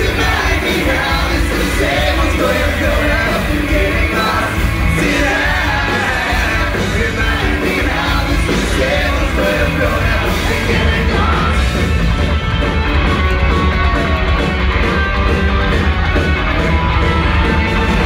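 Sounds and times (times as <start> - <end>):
sung and yelled vocals: 0.0 - 12.0
live ska-punk band: 0.0 - 18.0.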